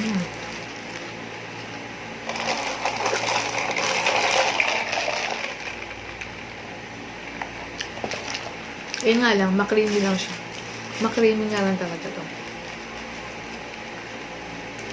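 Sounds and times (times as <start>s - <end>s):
drink slurped through a straw: 2.3s - 5.8s.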